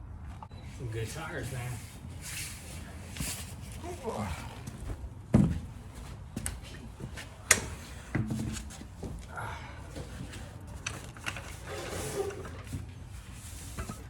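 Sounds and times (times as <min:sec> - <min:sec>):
scraping rustle: 0:00.6 - 0:14.0.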